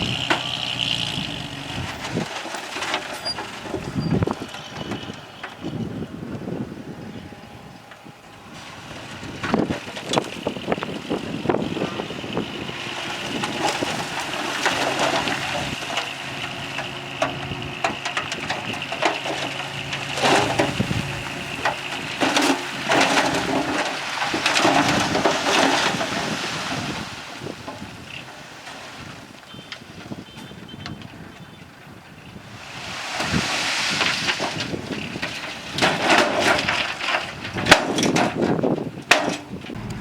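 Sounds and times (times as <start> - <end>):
metal clanking and rattling: 0.0 - 5.8, 9.2 - 26.4, 34.3 - 40.0
bulldozer diesel engine under load: 0.0 - 29.4, 32.4 - 40.0.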